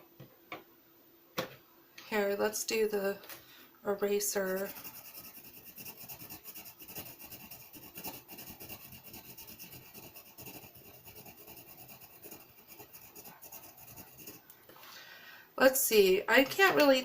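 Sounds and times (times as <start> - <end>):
eraser scrubbing on paper: 4.3 - 14.4.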